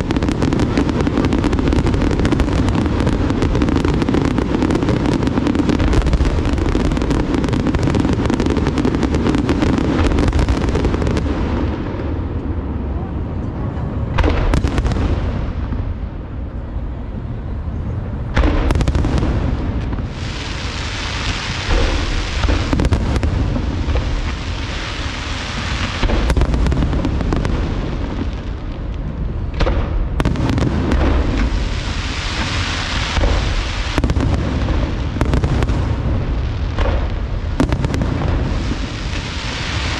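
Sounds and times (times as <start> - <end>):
sharp firework booms: 0.0 - 12.3, 14.1 - 16.1, 18.3 - 39.9
dense firework crackling: 0.0 - 13.0, 14.0 - 39.9.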